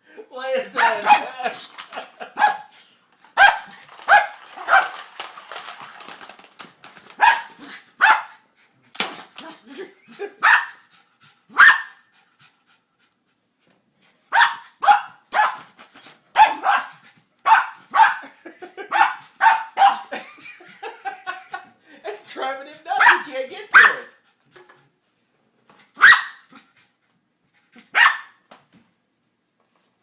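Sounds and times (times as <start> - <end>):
dog barking: 2.4 - 2.7, 3.4 - 4.9, 7.2 - 8.4, 10.4 - 10.8, 11.6 - 12.0, 14.3 - 15.6, 16.4 - 18.3, 18.9 - 20.1, 23.0 - 24.1, 26.0 - 26.5, 27.9 - 28.4.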